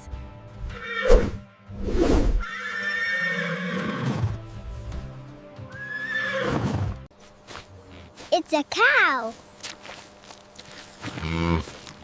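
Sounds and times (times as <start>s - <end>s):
background music: 0.0s - 7.1s
horse whinnying: 0.7s - 1.1s, 2.4s - 4.3s, 5.8s - 6.9s.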